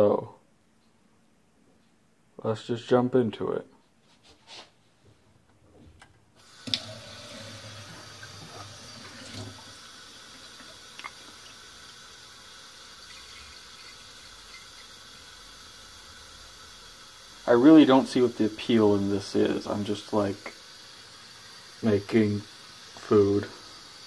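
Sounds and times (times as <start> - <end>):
kitchen tap running: 6.4 - 24.0.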